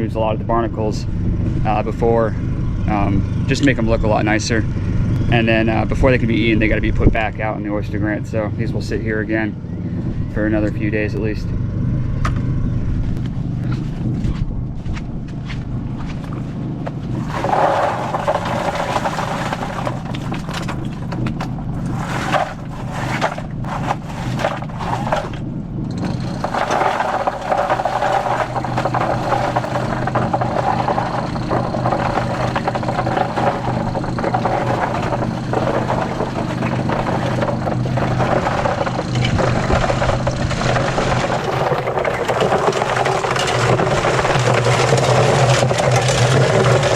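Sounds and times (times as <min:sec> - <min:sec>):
cement mixer motor hum: 0:16.0 - 0:46.9.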